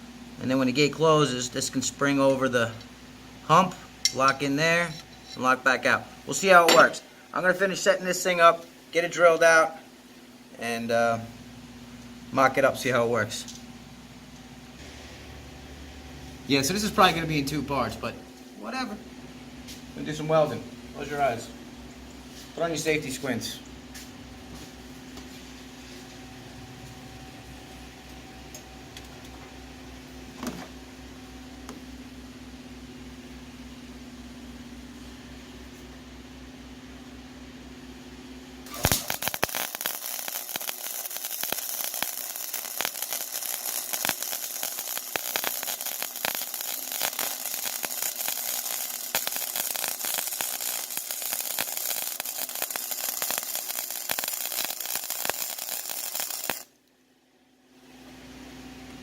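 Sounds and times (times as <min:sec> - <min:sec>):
electrical hum: 0:00.0 - 0:59.0
welding arc crackling: 0:38.7 - 0:56.8.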